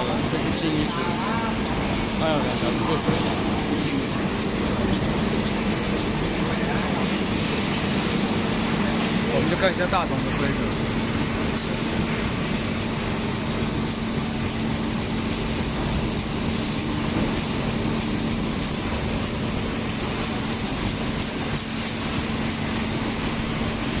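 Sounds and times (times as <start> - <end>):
machinery humming: 0.0 - 24.0.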